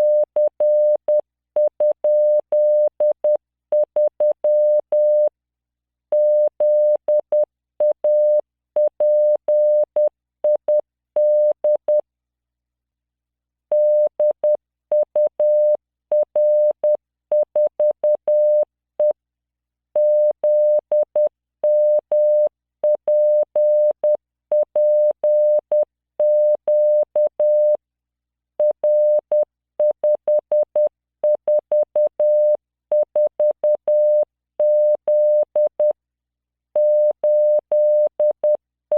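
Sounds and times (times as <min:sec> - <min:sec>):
morse code tone: 0:36.8 - 0:38.6.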